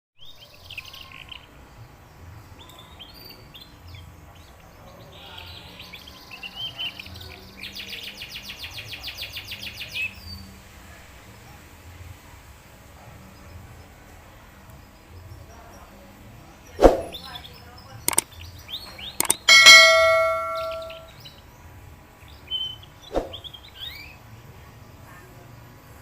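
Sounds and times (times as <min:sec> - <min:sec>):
canary singing: 0:19.2 - 0:21.1.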